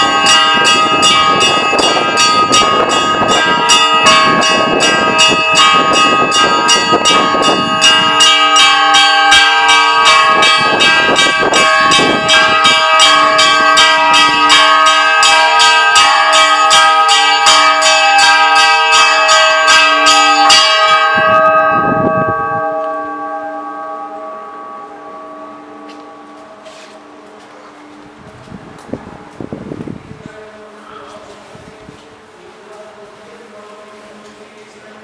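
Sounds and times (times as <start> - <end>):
small bells struck rapidly: 0.0 - 22.2
large bells ringing: 0.0 - 32.0.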